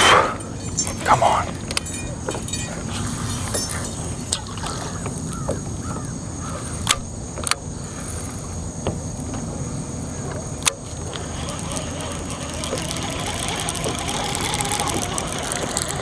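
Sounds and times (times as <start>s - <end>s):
bird calling: 0.0s - 7.1s
sharp clicks: 6.8s - 7.6s, 10.6s - 16.0s.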